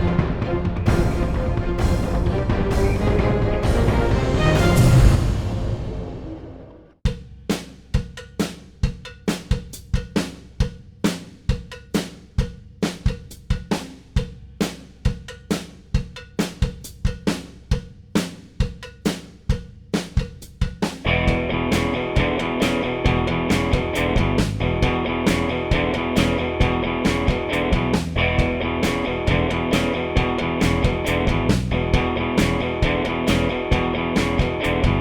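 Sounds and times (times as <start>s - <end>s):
drum kit beat: 0.0s - 6.1s, 7.0s - 35.0s
band with guitar: 0.0s - 6.5s, 21.0s - 35.0s.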